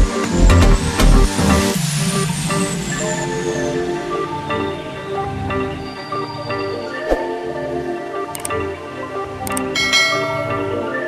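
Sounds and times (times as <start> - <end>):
background music melody with bass: 0.0 - 5.8.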